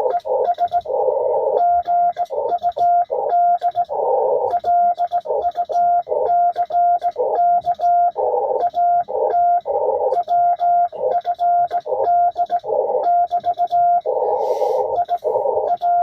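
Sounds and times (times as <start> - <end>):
morse code tone: 0.0 - 16.0
radio receiver hiss: 14.0 - 15.7.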